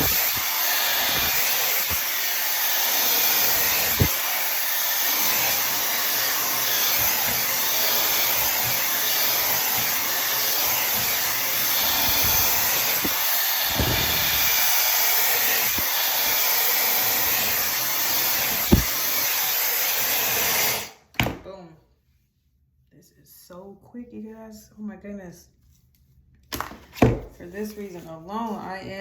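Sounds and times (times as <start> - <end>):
hair dryer blowing: 0.0 - 21.0.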